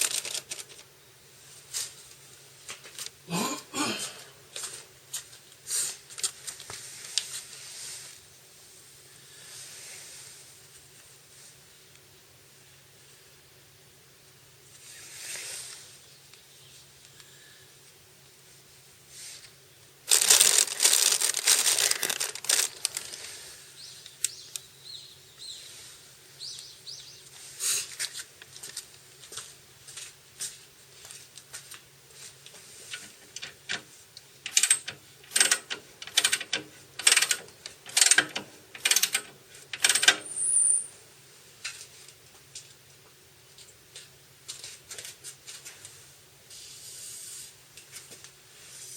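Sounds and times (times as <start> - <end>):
hiss: 6.8 - 8.2, 9.2 - 10.6, 14.8 - 16.0, 46.5 - 47.6, 48.6 - 48.9.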